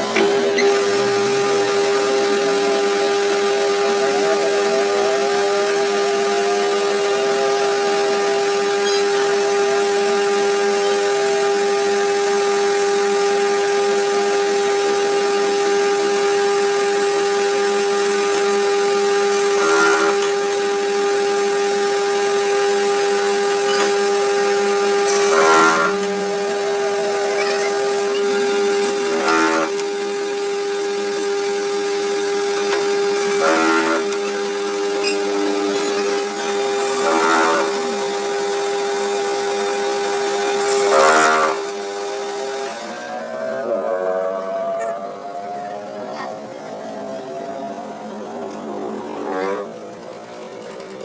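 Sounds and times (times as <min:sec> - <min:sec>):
machine tool motor hum: 0:00.0 - 0:51.0
loud scraping: 0:23.4 - 0:29.8.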